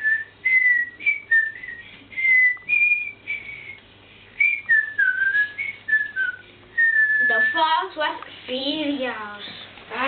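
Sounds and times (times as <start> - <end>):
child whistling a tune: 0.0 - 3.8, 4.4 - 7.9.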